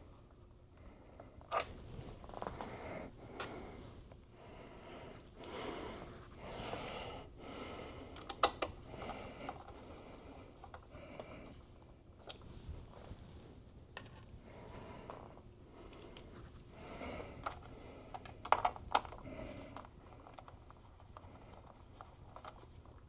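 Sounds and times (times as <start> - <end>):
sharp handling clicks: 8.1 - 9.6.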